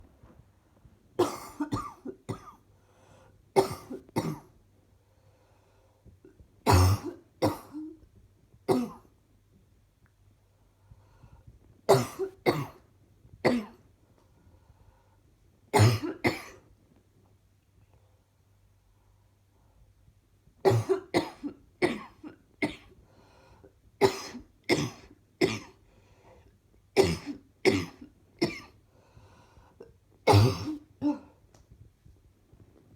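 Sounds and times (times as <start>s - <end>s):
woman coughing: 1.2s - 2.6s, 3.6s - 4.5s, 6.7s - 7.9s, 15.8s - 16.6s, 20.7s - 22.9s, 30.3s - 31.4s.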